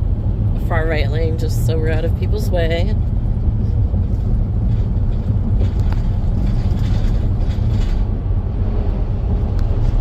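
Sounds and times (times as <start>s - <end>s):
vehicle road rumble: 0.0s - 10.0s
faint clicks and rattles: 3.0s - 8.2s.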